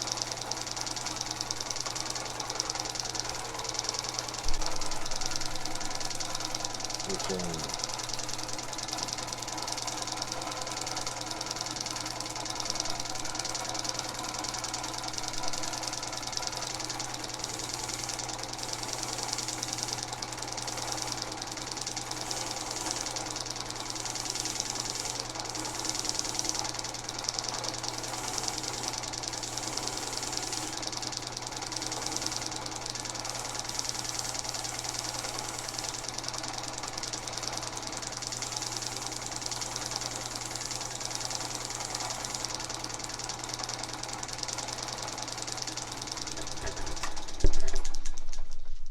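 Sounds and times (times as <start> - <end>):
drill press motor humming: 0.0 - 47.7.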